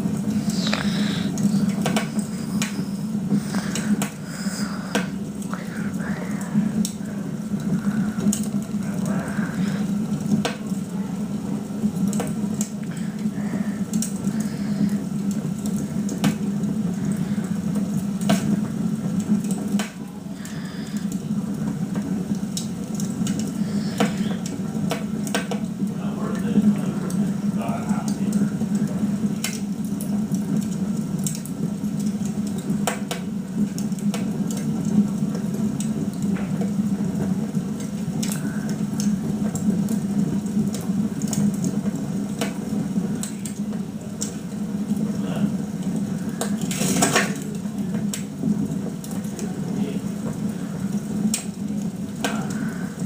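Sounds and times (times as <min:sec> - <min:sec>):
low hum: 0:00.0 - 0:26.0
wood fire crackling and popping: 0:00.0 - 0:53.0.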